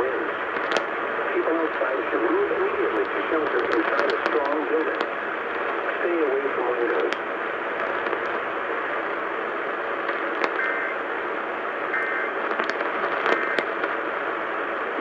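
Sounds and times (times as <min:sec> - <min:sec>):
radio static hiss: 0:00.0 - 0:15.0
crackles and clicks: 0:00.2 - 0:11.2, 0:11.8 - 0:15.0
faint tones: 0:11.9 - 0:14.0.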